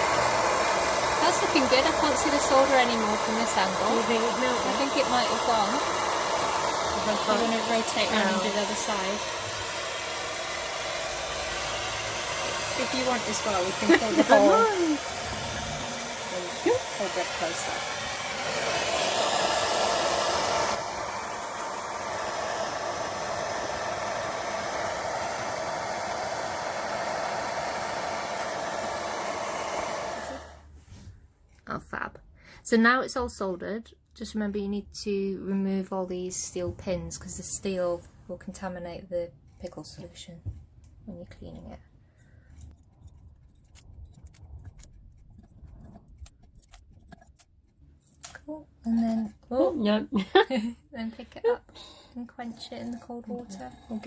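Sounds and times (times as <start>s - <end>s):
torch flame hissing: 0.0s - 30.7s.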